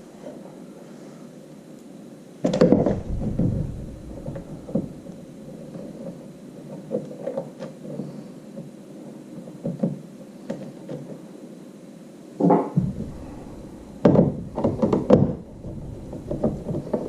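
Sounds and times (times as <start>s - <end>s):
hollow bump on kayak: 2.6s - 6.0s, 12.8s - 17.0s.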